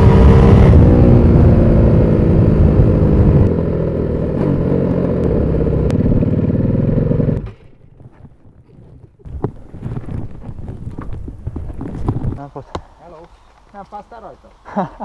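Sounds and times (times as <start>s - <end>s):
motorcycle engine idling: 3.6s - 8.0s.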